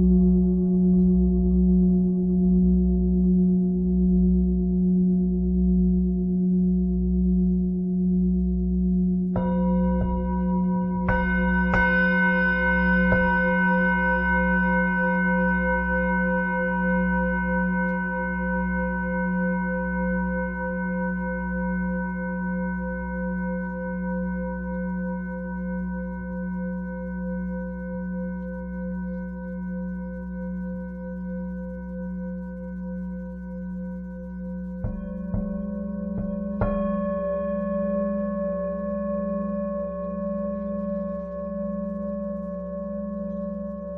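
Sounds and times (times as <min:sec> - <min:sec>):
singing bowl humming: 0:00.0 - 0:43.9
singing bowl strikes: 0:09.4 - 0:21.4, 0:34.5 - 0:43.9.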